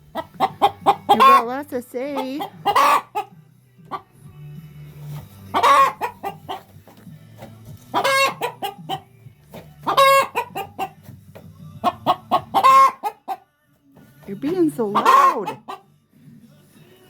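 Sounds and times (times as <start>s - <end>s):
hen clucking and squawking: 0.0s - 4.2s, 5.0s - 11.2s, 11.8s - 13.5s, 14.4s - 15.9s.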